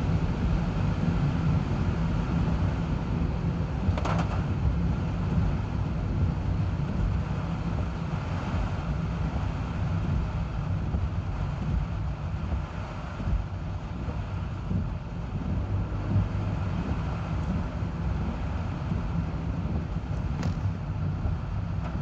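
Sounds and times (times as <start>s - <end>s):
car driving rumble: 0.0s - 22.0s
wind and road noise hiss: 0.0s - 22.0s.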